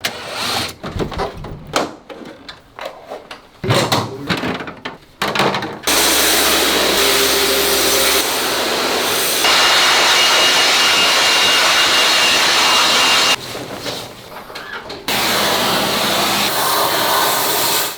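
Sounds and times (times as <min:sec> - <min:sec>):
high-pressure cleaner hissing: 0:05.9 - 0:13.4, 0:15.1 - 0:17.9.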